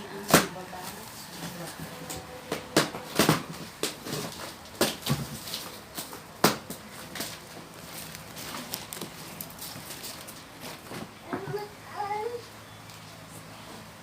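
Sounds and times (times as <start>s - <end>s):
wrapping being torn off: 6.8s - 11.0s.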